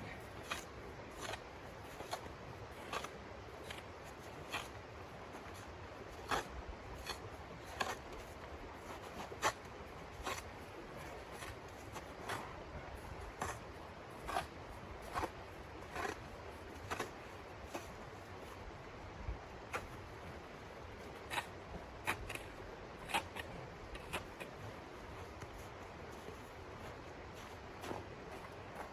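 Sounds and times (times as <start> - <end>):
low steady hiss: 0.0 - 28.9
footsteps crunching in snow: 24.0 - 28.9.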